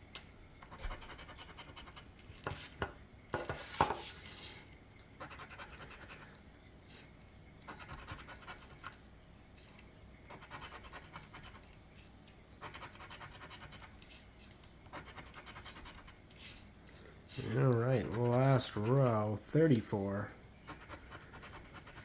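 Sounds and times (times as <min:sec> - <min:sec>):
lottery ticket scraping: 0:17.4 - 0:20.0.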